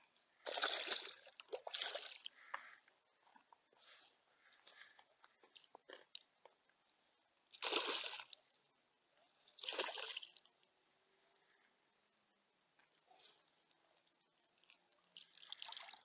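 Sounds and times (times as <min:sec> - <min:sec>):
water splashes: 0:00.4 - 0:02.5, 0:07.5 - 0:08.4, 0:09.6 - 0:10.5, 0:15.2 - 0:16.0.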